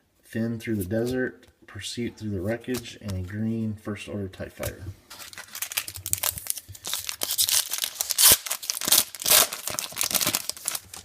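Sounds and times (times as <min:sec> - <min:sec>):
wrapper tearing and crinkling: 0:05.1 - 0:11.0.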